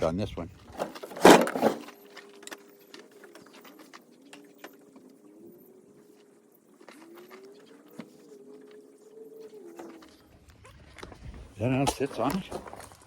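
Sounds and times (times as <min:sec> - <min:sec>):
dove cooing: 0:04.6 - 0:11.0.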